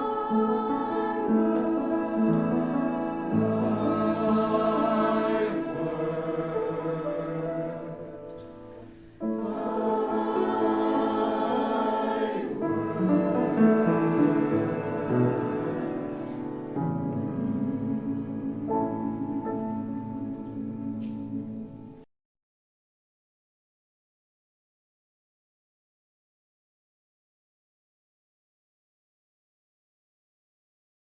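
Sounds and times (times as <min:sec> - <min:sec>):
choir singing held chords: 0:00.0 - 0:22.0.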